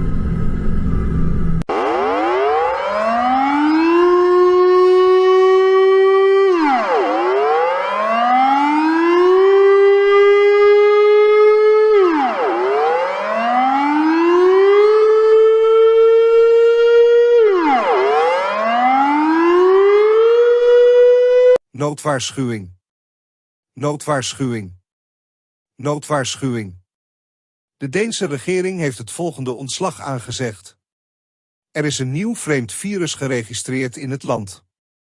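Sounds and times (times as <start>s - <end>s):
siren wailing: 0.0s - 21.6s.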